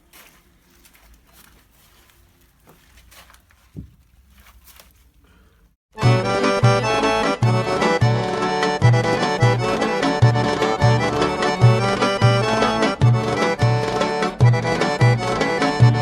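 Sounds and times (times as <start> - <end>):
instrumental music with bass beat: 6.0 - 16.0.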